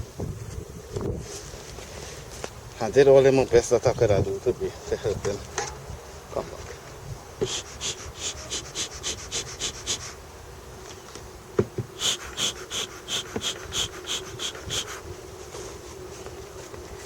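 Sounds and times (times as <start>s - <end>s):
honeybees humming: 5.8s - 17.0s.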